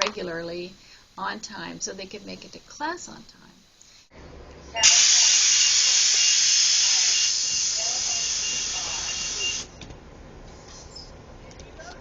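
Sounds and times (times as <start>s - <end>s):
bus air brakes hissing: 4.8s - 9.8s.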